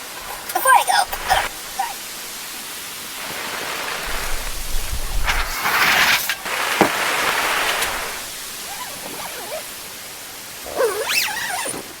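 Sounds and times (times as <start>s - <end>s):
heavy rain hissing: 0.0s - 12.0s
warbling bird call: 7.4s - 9.8s.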